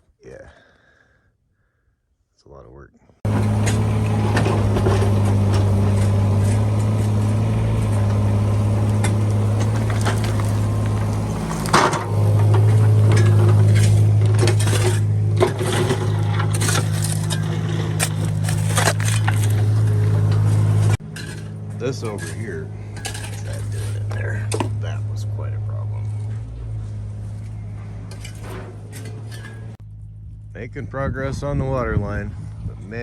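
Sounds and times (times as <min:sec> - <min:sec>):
excavator engine humming: 0:03.2 - 0:30.6
bucket scraping rocky soil: 0:03.3 - 0:25.0.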